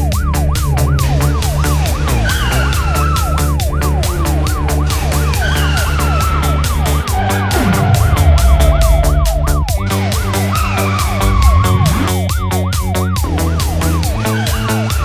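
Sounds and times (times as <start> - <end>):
police siren wailing: 5.1 - 12.2
music with steady beat: 6.7 - 14.2.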